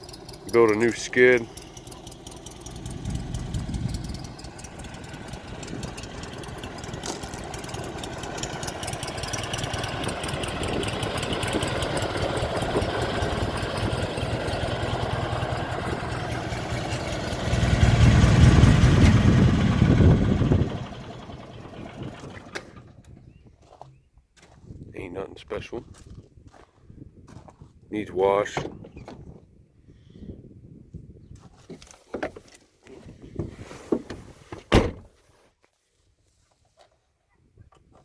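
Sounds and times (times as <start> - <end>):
welder engine idling: 0.0 - 22.9.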